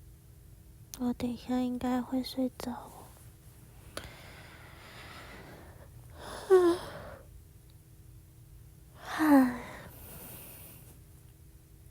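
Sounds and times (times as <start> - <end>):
woman sighing: 6.2 - 7.2, 9.0 - 9.9.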